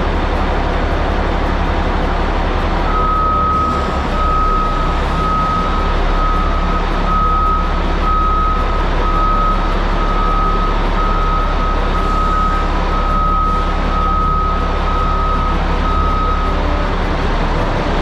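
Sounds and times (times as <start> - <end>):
diesel engine running: 0.0 - 18.0
reversing alarm beeping: 2.9 - 18.0.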